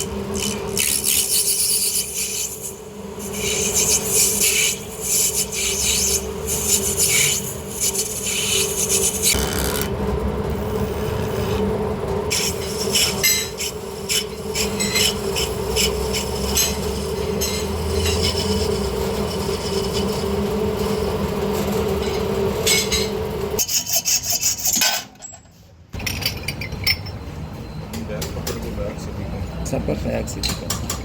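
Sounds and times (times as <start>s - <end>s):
metal scraping spinning workpiece: 0.0s - 25.4s
lathe motor hum: 2.8s - 23.6s.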